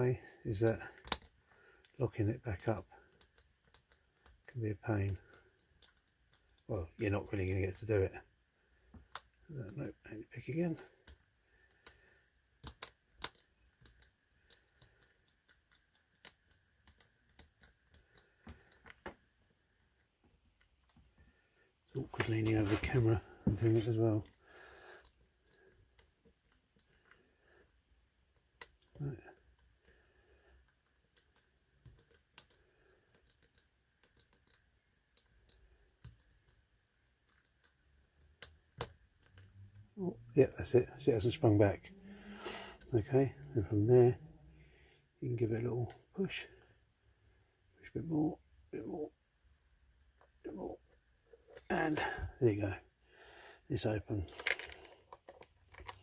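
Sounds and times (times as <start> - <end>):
metal clicks of padlock picking: 1.0 - 1.3, 12.6 - 19.0, 30.8 - 36.6.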